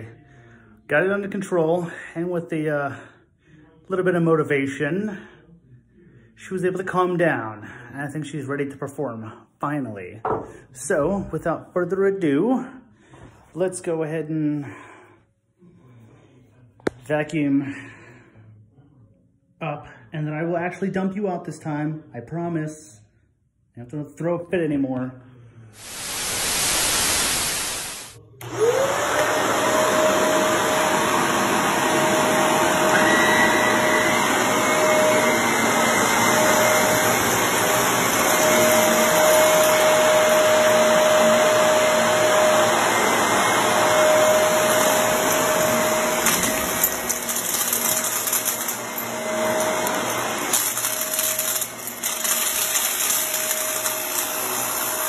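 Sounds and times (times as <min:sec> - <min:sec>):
brief hiss: 0:25.8 - 0:28.2
vacuum cleaner whining: 0:25.8 - 0:55.0.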